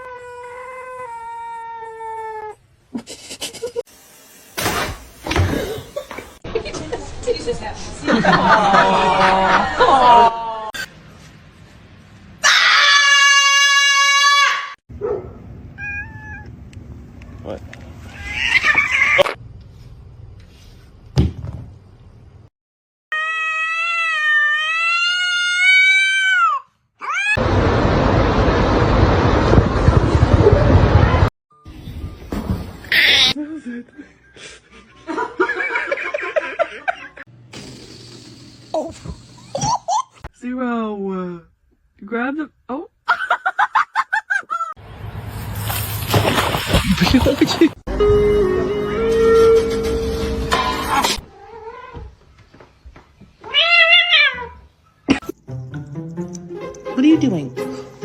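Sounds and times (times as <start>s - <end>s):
cat meowing: 15.8s - 16.5s, 53.4s - 54.6s
cat yowling: 15.8s - 16.5s, 18.1s - 19.4s, 23.1s - 27.4s, 53.4s - 54.6s
noisy rumble: 27.4s - 31.3s.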